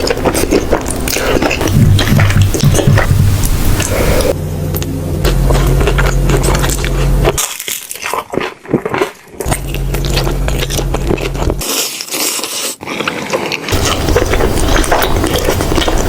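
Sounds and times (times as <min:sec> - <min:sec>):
crackling and wet clicking: 0:00.0 - 0:04.9, 0:12.8 - 0:16.0
chewing and biting food: 0:00.0 - 0:16.0
hissy noise: 0:01.6 - 0:04.4.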